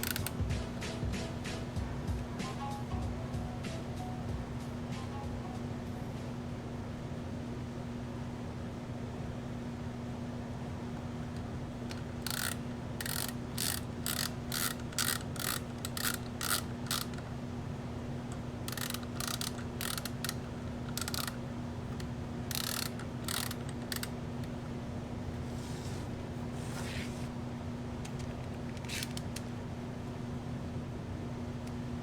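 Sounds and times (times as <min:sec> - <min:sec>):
steady low hum: 0:00.0 - 0:32.0
short sharp mechanical clicks: 0:22.0 - 0:24.2.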